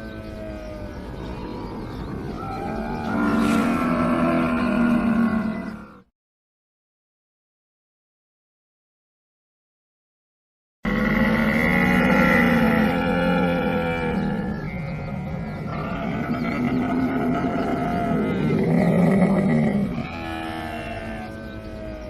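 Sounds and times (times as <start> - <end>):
camel calling: 0.0 - 6.0, 10.9 - 22.0.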